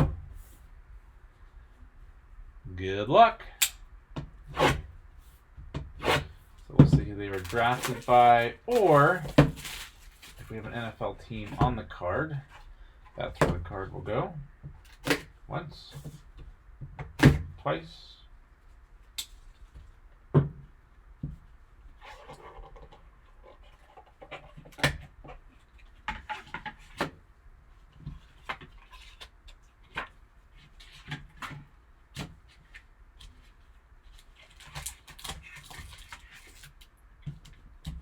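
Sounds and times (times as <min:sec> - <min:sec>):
card box and packaging handled: 0:06.1 - 0:11.7, 0:27.9 - 0:38.0.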